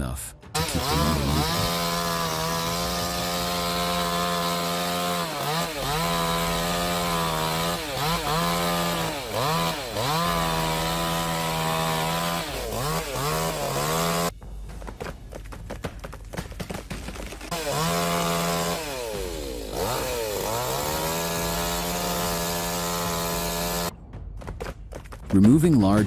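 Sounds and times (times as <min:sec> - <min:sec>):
chainsaw running at high revs: 0:00.6 - 0:14.3, 0:17.5 - 0:23.9.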